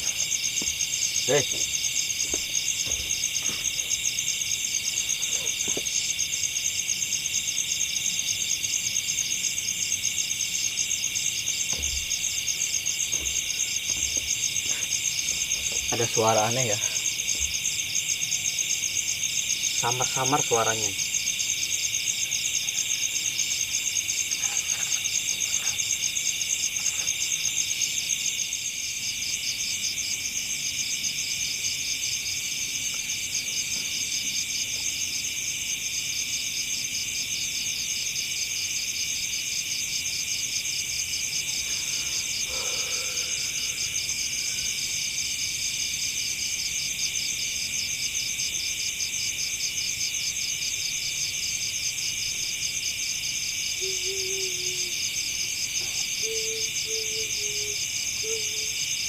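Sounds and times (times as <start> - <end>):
crickets and insects trilling: 0.0 - 59.0.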